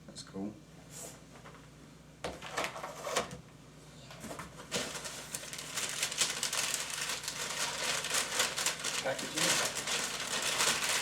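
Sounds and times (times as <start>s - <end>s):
packaging crinkling and rustling: 4.3s - 11.0s.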